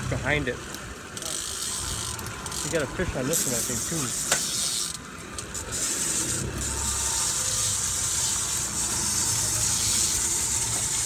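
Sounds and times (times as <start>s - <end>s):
wind and water hiss: 0.0s - 11.0s.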